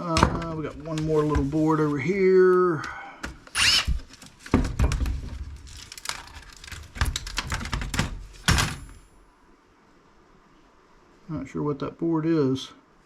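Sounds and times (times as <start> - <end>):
short squeaky scrape: 3.5 - 4.0
plastic laptop parts clicking: 5.6 - 8.6.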